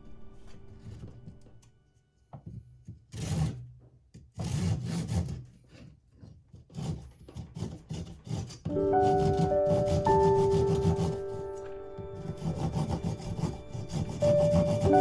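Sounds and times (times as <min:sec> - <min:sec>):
saw cutting through wood: 0:06.7 - 0:15.0.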